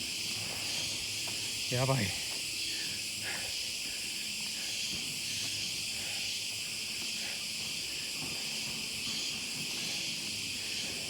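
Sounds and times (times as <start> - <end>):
shrill insect chorus: 0.0 - 11.0.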